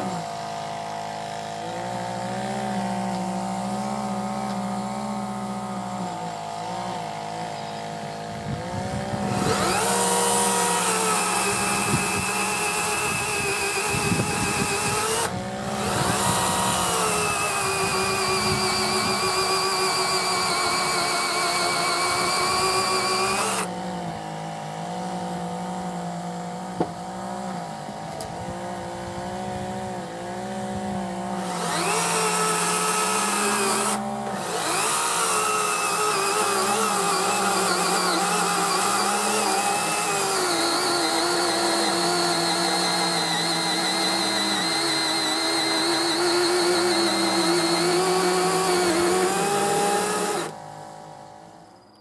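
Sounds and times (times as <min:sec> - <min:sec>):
electric chainsaw cutting wood: 0:00.0 - 0:50.8.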